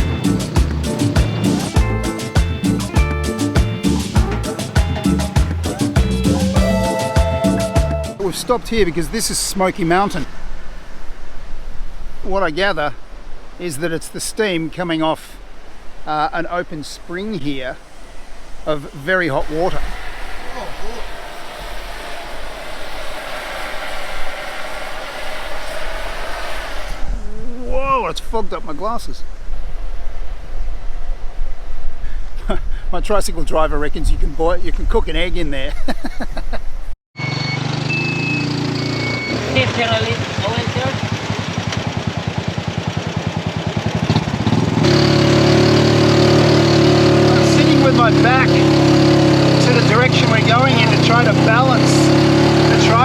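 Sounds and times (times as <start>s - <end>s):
motorcycle engine chugging: 0.0s - 8.2s, 37.6s - 53.0s
motorcycle engine idling: 39.6s - 45.2s.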